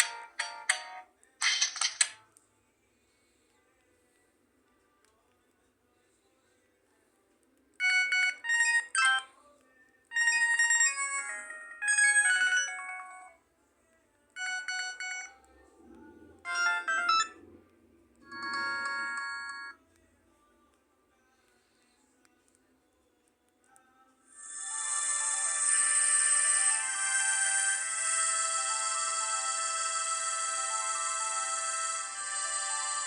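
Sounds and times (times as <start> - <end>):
mobile phone ringtone music: 0.0 - 2.0, 7.8 - 9.4, 10.1 - 13.4, 14.4 - 15.5, 16.4 - 17.4, 18.2 - 19.8, 24.3 - 33.0.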